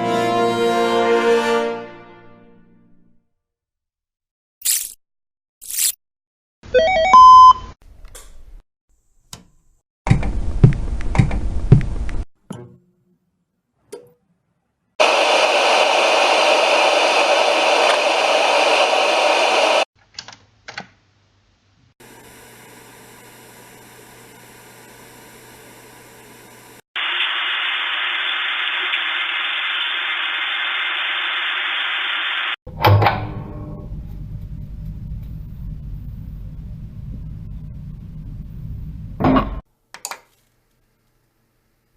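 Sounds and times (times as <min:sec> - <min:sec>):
click: 0:09.3 - 0:09.5
tv static hiss: 0:27.0 - 0:32.6.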